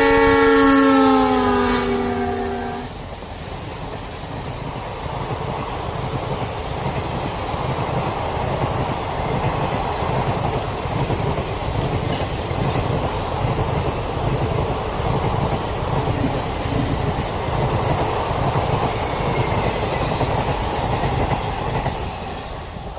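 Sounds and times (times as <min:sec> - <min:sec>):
train wheels clattering on rails: 0:03.0 - 0:22.9.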